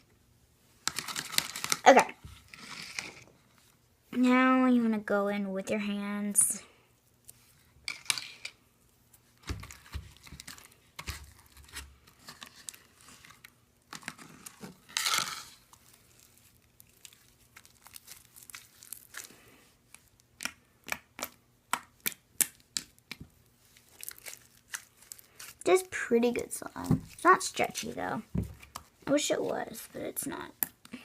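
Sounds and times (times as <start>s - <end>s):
slime tearing: 15.6s - 25.7s
sticky slime crackles and pops: 15.7s - 25.8s.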